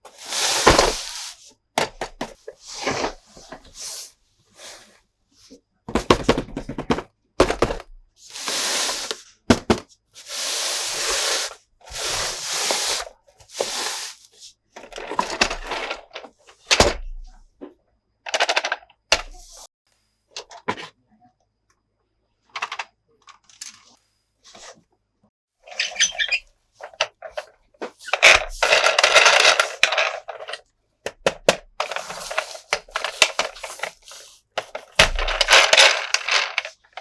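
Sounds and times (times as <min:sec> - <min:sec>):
toy scraping noise: 0:00.0 - 0:01.5, 0:08.3 - 0:09.4, 0:10.2 - 0:14.5, 0:25.7 - 0:30.5, 0:31.8 - 0:36.8
plastic toys knocking: 0:05.9 - 0:08.0, 0:09.5 - 0:09.9, 0:34.6 - 0:36.8.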